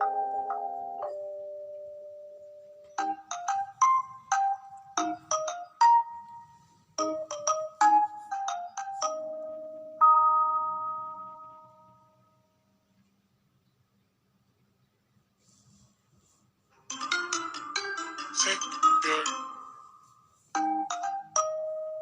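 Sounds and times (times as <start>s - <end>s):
bell-like mallet melody: 0.0s - 12.2s, 16.9s - 22.0s.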